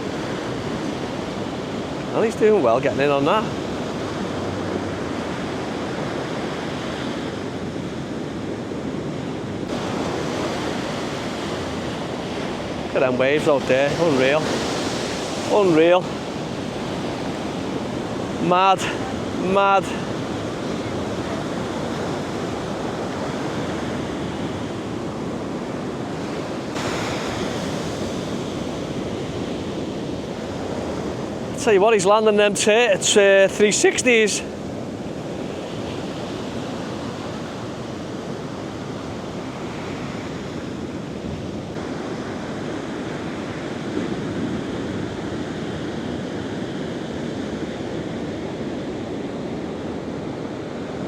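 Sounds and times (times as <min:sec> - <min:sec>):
wind buffeting microphone: 0:00.0 - 0:31.9
ocean surf breaking: 0:00.0 - 0:51.0.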